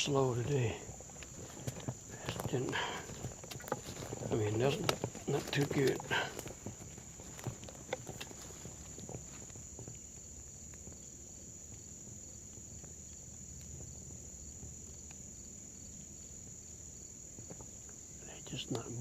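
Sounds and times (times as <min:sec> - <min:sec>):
low rustle: 0:00.0 - 0:10.8
crickets trilling: 0:00.0 - 0:19.0
pulsed insect chirp: 0:00.0 - 0:19.0.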